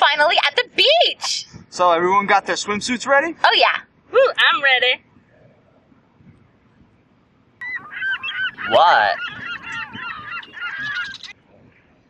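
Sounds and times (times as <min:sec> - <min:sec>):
flock of birds calling: 0:07.6 - 0:11.4.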